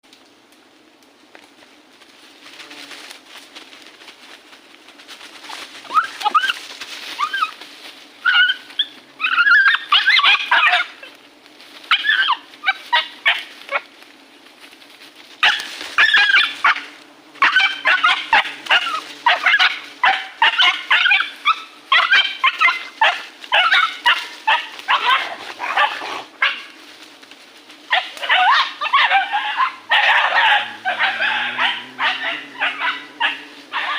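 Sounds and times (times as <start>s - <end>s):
dog-like yelping and whimpering: 8.2s - 11.1s, 11.9s - 13.4s, 28.0s - 33.9s.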